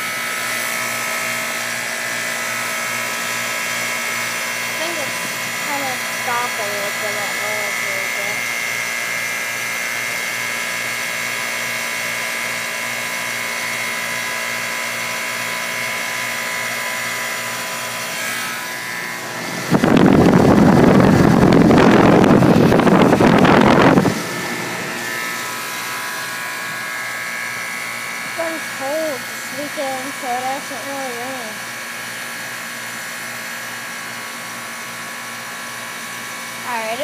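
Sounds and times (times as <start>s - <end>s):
air conditioner humming and whining: 0.0s - 37.0s
loud rough rushing noise: 18.9s - 26.8s.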